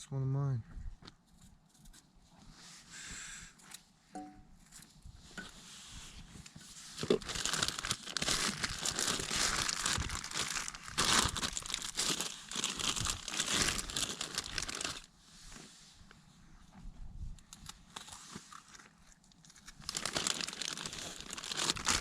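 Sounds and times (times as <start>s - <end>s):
crinkling material: 4.6s - 22.0s.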